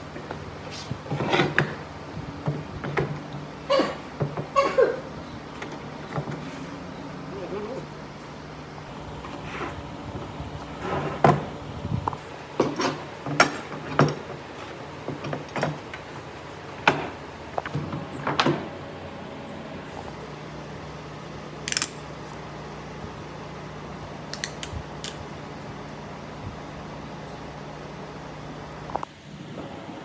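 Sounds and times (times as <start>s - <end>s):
steady low hum: 0.0s - 30.0s
knocks and clatters: 0.1s - 4.6s, 10.2s - 18.8s.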